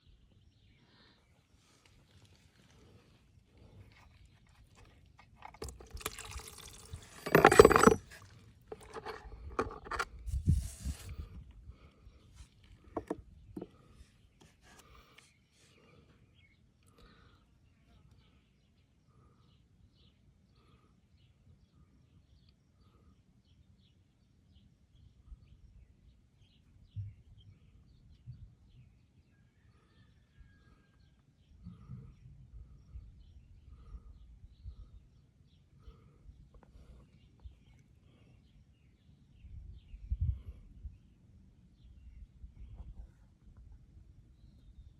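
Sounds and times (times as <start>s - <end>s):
fluid splashing and pouring: 5.4s - 7.6s
small clicks and knocks: 5.4s - 10.1s.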